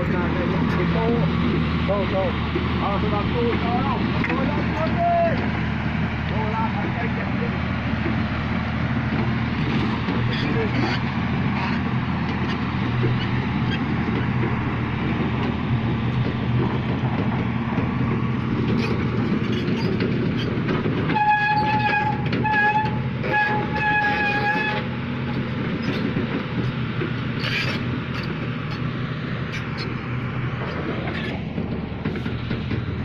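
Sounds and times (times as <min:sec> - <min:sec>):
heavy engine running: 0:00.0 - 0:33.0
vehicle horn blasts: 0:21.1 - 0:24.9.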